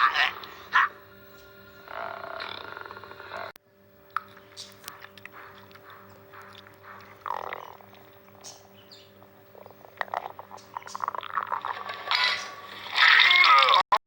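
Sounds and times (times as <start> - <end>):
faint steady hum: 0.0 - 13.8
stomach gurgling and growling: 1.9 - 3.6, 5.0 - 8.2, 9.5 - 13.9.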